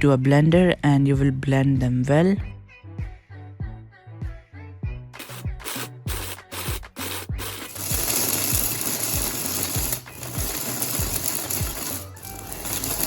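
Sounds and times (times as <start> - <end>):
blender grinding nuts: 5.2 - 13.0.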